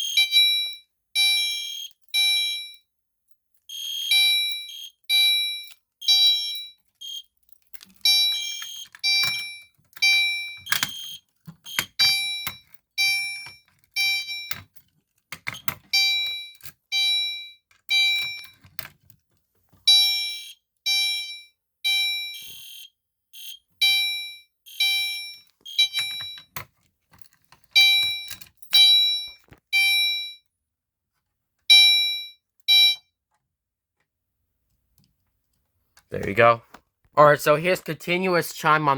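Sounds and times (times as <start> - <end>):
fire alarm chime: 0.0 - 2.8, 3.7 - 7.3, 8.0 - 14.6, 15.9 - 18.6, 19.9 - 26.5, 27.8 - 30.5, 31.7 - 33.1.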